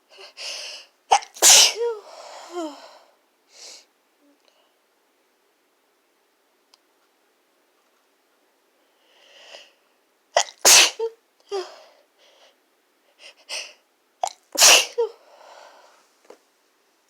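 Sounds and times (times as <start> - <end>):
person sneezing: 1.1 - 2.8, 10.4 - 11.7, 13.5 - 15.2.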